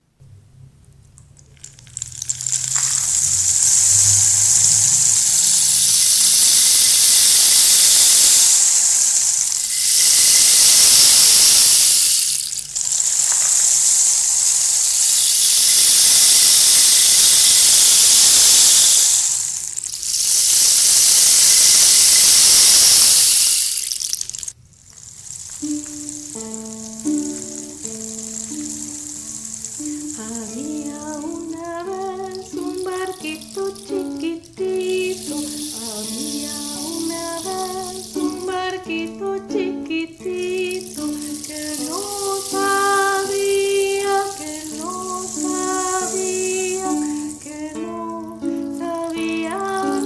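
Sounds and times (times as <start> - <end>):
water rushing: 1.6 - 38.6.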